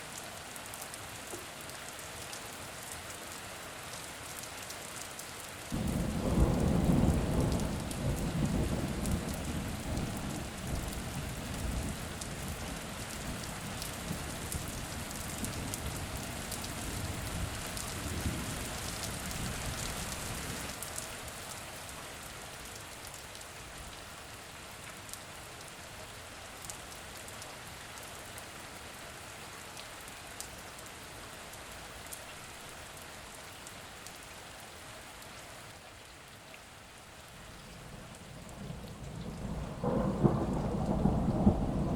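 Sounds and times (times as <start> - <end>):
steady rain: 0.0 - 41.9
thunder rumbling: 5.8 - 10.8, 37.8 - 41.9.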